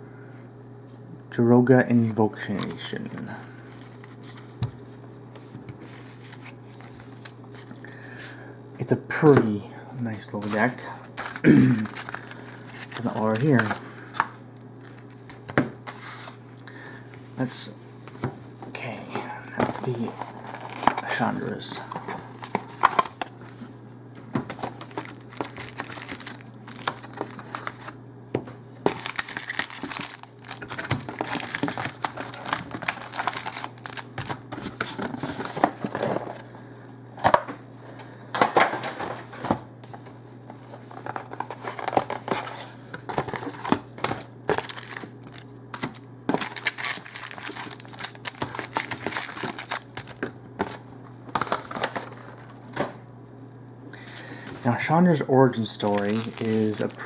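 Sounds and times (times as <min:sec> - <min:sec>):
packaging crinkling: 0:10.4 - 0:16.4, 0:19.6 - 0:28.0, 0:28.8 - 0:36.4, 0:38.4 - 0:52.9, 0:55.6 - 0:57.0.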